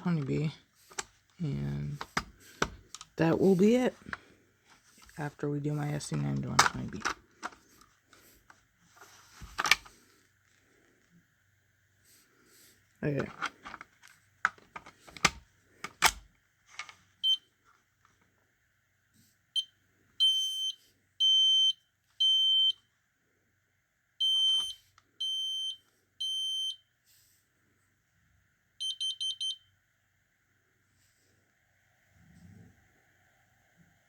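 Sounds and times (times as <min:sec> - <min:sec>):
smoke alarm beeping: 0:19.6 - 0:22.8, 0:24.2 - 0:26.9, 0:28.8 - 0:29.7
smoke alarm clicks: 0:24.2 - 0:26.8.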